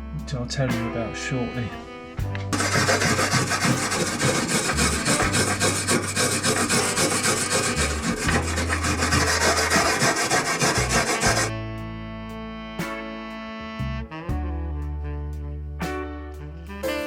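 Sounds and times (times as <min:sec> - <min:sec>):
wire brush scrubbing metal: 0:02.5 - 0:11.5.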